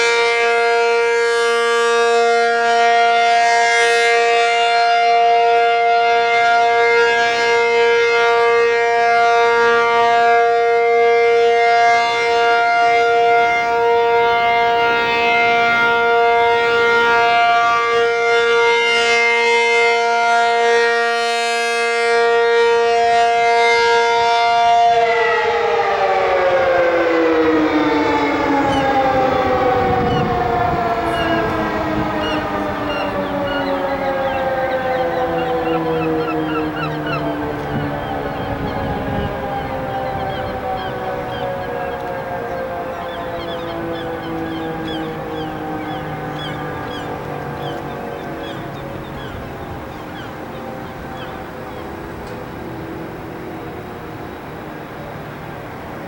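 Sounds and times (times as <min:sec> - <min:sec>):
warning siren: 0:00.0 - 0:56.0.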